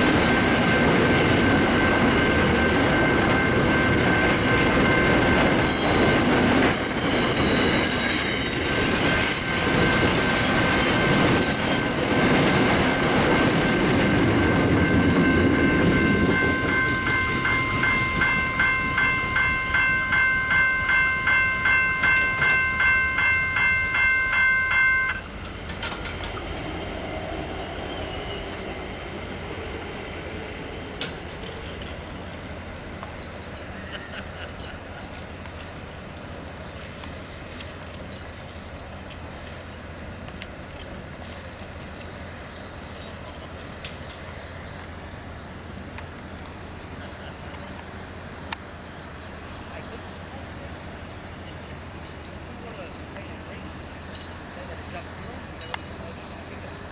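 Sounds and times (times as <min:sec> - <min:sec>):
high-pitched train squealing: 0:00.0 - 0:56.9
train rumbling past: 0:00.0 - 0:56.9
pulsing ringing tone: 0:13.3 - 0:25.3.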